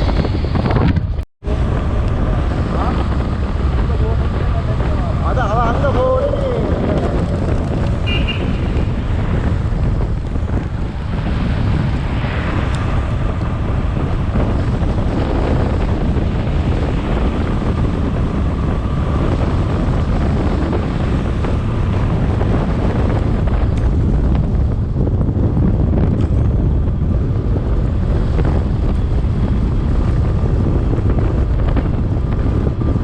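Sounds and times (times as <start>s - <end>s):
motorcycle engine: 0.0s - 33.0s
road noise: 0.0s - 33.0s
wind buffeting microphone: 0.0s - 33.0s.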